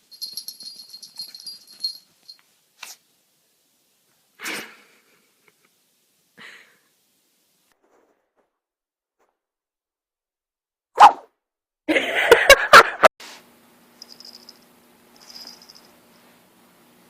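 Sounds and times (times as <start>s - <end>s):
jingling rattle: 0.0s - 2.4s, 14.0s - 14.6s, 15.2s - 15.9s.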